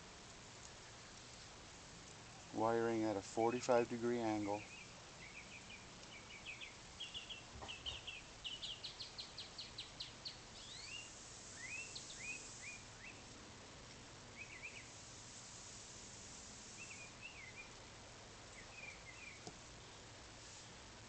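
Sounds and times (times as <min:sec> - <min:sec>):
faint steady hiss: 0:00.0 - 0:21.0
small birds chirping: 0:02.3 - 0:13.3, 0:14.3 - 0:15.0, 0:16.6 - 0:17.8, 0:18.4 - 0:20.9.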